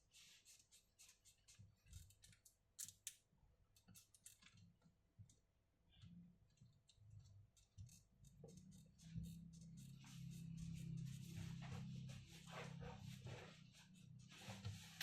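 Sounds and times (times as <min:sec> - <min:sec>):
small clicks and taps of tools: 0:01.9 - 0:05.4.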